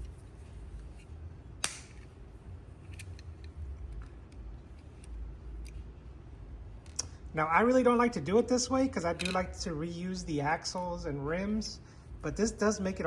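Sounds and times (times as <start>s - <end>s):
sharp snap: 1.6s - 2.1s.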